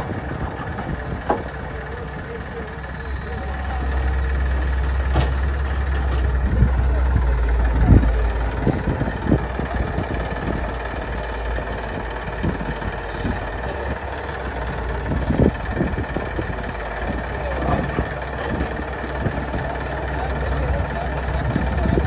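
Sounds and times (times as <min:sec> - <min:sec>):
diesel engines rumbling: 0:00.0 - 0:22.0
short knocks and clunks: 0:04.9 - 0:06.5.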